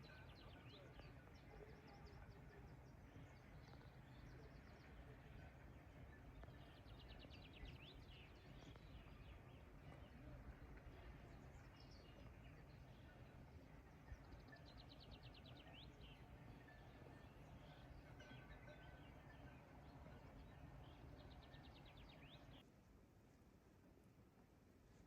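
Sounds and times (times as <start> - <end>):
bird chirps: 0.0 - 22.6
bird trill: 0.0 - 22.6.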